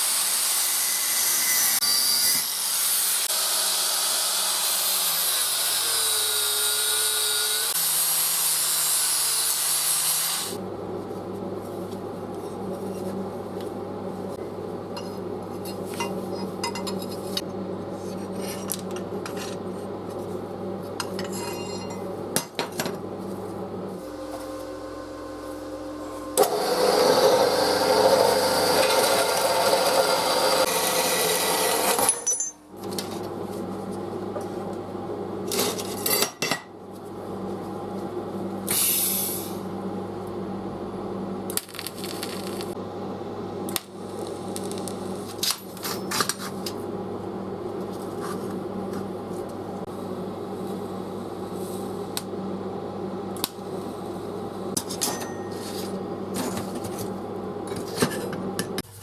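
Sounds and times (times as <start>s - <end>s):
loud metalworking tool running: 0.0s - 10.6s, 25.8s - 33.2s
steady machine hum: 10.6s - 59.0s.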